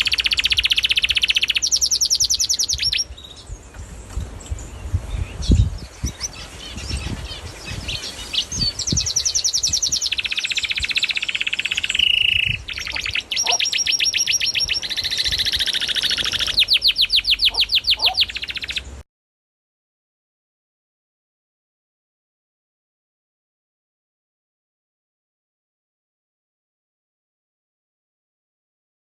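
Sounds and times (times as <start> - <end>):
canary singing trills: 0.0 - 19.0.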